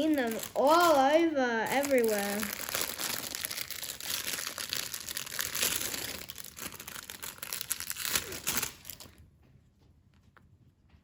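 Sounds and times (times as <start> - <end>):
plastic packaging crinkling: 0.0 - 9.2.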